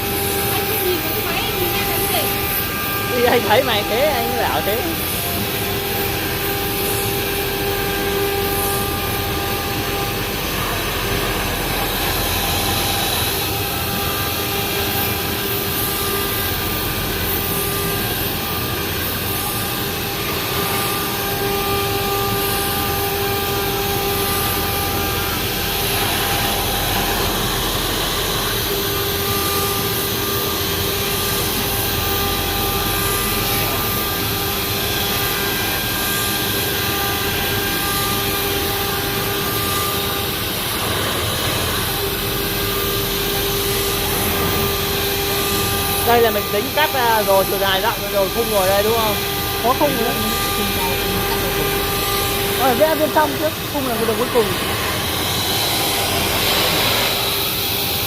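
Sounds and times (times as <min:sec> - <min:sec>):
plotter rushing noise: 0:00.0 - 0:07.6, 0:29.7 - 0:58.0
motor whine: 0:00.0 - 0:58.0.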